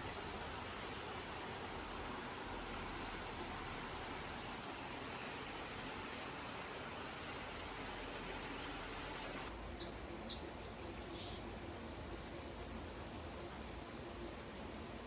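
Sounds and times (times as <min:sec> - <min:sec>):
steady hiss: 0:00.0 - 0:09.6
faint outdoor ambience: 0:00.0 - 0:15.0.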